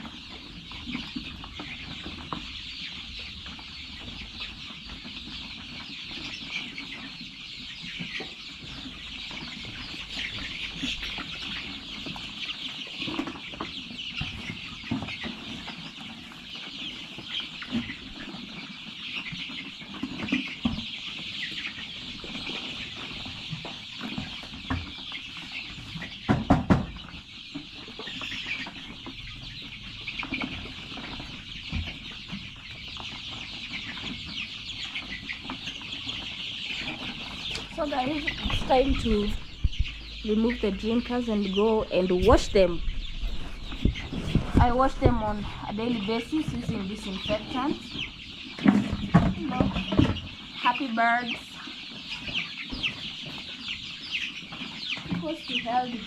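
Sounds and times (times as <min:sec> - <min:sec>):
chicks cheeping and clucking: 0:00.0 - 0:56.0.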